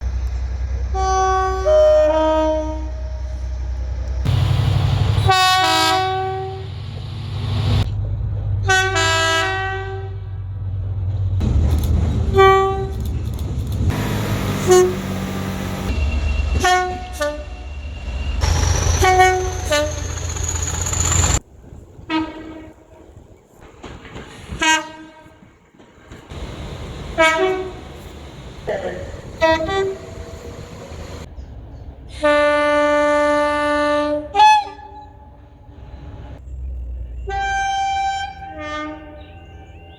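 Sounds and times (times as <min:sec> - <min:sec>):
two-tone train horn blasts: 0:00.9 - 0:03.2, 0:04.3 - 0:06.8, 0:08.6 - 0:10.4, 0:13.9 - 0:20.1, 0:26.4 - 0:28.0, 0:29.4 - 0:30.5, 0:32.1 - 0:35.1, 0:37.2 - 0:39.9
low rumble: 0:03.0 - 0:08.6.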